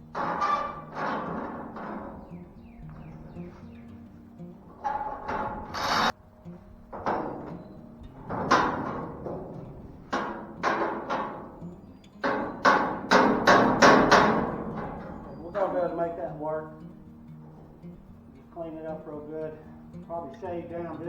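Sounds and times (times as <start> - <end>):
metal-on-metal knocks ringing: 0.0 - 4.0, 4.6 - 6.2, 6.9 - 16.2.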